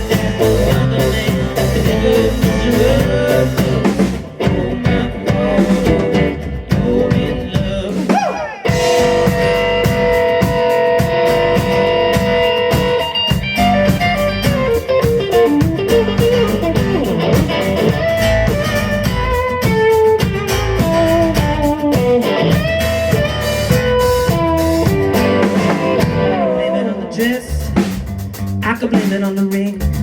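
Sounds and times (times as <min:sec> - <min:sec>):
bass and drums: 0:00.0 - 0:30.0
electric guitar solo: 0:08.2 - 0:27.2.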